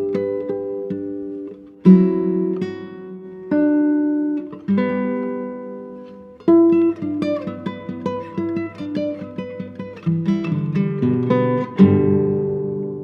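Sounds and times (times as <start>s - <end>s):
guitar chords ringing: 0.0s - 13.0s.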